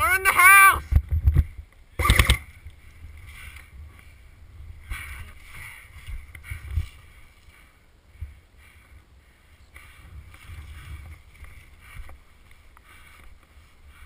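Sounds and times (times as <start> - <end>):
wind rumble: 0.8 - 14.0
clatter of sharp clicks: 2.0 - 2.4.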